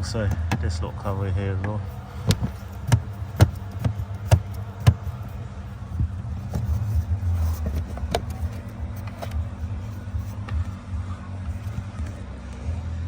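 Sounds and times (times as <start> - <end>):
low steady hum: 0.0 - 13.0
hand tools clicking on plastic trim: 2.0 - 5.4.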